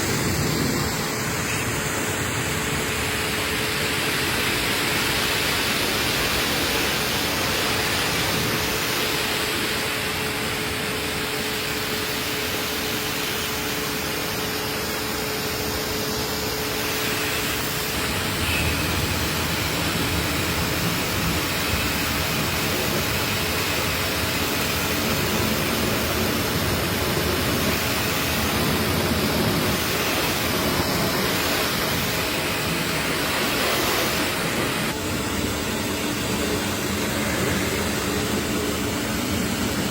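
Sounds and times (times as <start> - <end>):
car-cleaning equipment rushing: 0.0 - 39.9.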